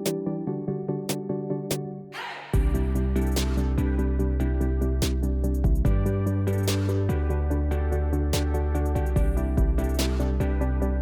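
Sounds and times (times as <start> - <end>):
background music with steady beat: 2.6 - 11.0.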